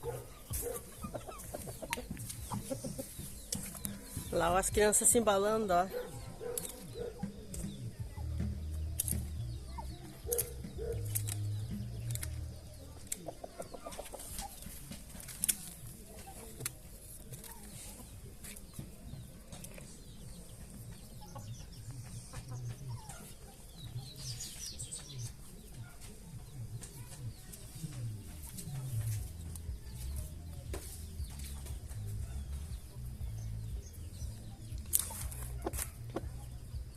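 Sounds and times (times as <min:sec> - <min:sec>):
high chirping calls: 0:00.0 - 0:16.6
poultry clucking: 0:00.0 - 0:36.9
sharp clicks: 0:06.5 - 0:07.7, 0:08.8 - 0:09.5, 0:10.2 - 0:13.3, 0:34.8 - 0:36.2.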